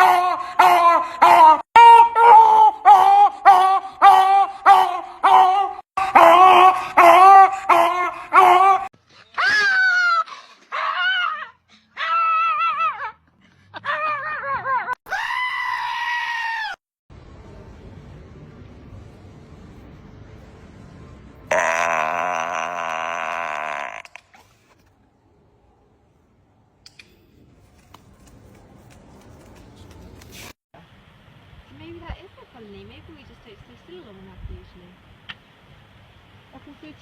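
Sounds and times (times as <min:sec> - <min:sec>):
animal screaming calls: 0:00.0 - 0:16.8, 0:21.5 - 0:24.4.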